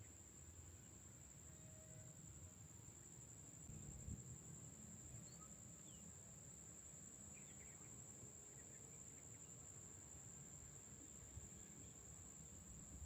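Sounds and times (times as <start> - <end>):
high insect trill: 0.0 - 13.0
faint bird chirps: 5.2 - 6.1, 7.3 - 9.6.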